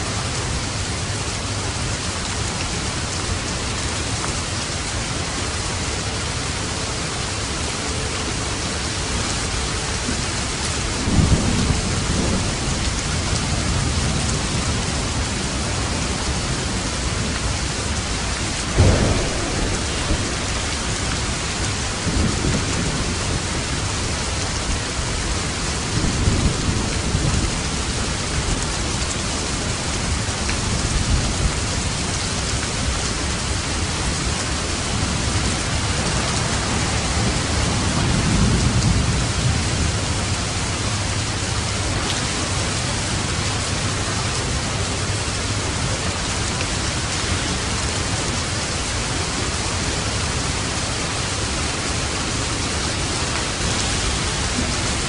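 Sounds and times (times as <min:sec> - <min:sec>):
heavy rain on a roof: 0:00.0 - 0:55.0
thunder rumbling: 0:08.5 - 0:55.0.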